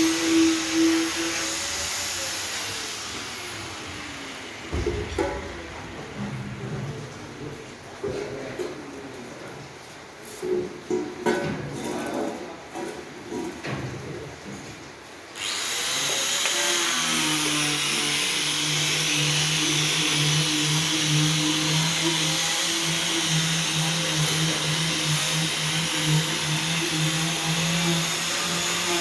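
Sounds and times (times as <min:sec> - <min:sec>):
steam hiss: 0:00.0 - 0:04.9.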